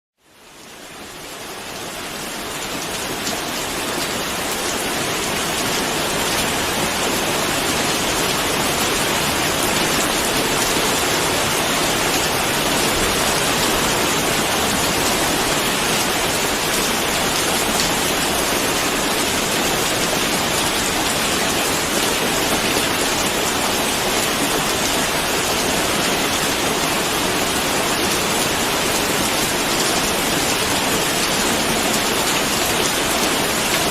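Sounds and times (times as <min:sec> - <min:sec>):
steady dense rainfall: 0:00.2 - 0:33.9.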